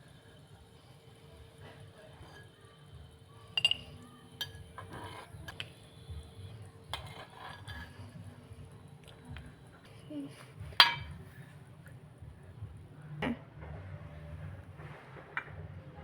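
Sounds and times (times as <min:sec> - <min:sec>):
low steady hum: 0:00.0 - 0:16.0
dishes and utensils clinking: 0:03.5 - 0:05.8, 0:06.8 - 0:08.3, 0:10.6 - 0:11.4.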